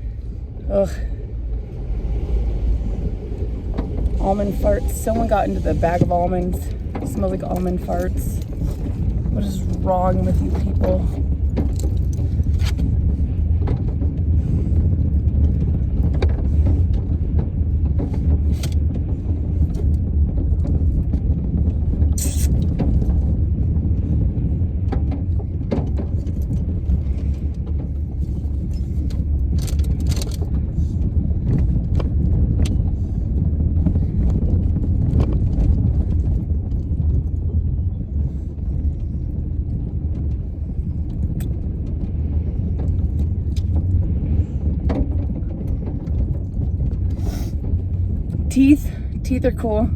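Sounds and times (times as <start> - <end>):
vehicle rumble from inside cabin: 0.0 - 49.9
clicks and rattles: 28.4 - 30.6.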